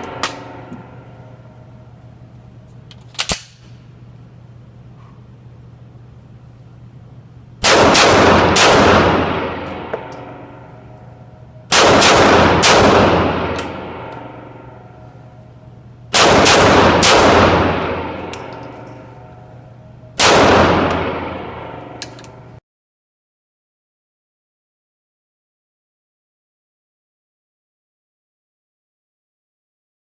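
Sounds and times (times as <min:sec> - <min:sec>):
pistol shots echoing: 0:07.6 - 0:10.6, 0:11.7 - 0:14.5, 0:16.1 - 0:18.8, 0:20.2 - 0:22.0.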